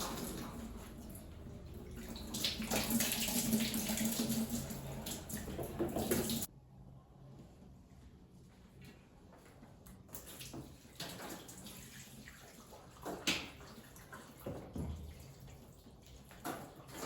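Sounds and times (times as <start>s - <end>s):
water running and splashing: 0.0s - 6.5s.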